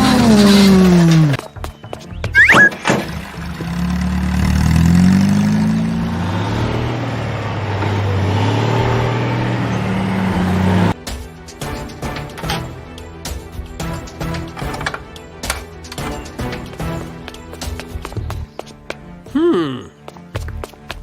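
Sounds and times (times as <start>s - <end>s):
vehicle engine revving: 0.0s - 1.4s, 3.0s - 11.0s.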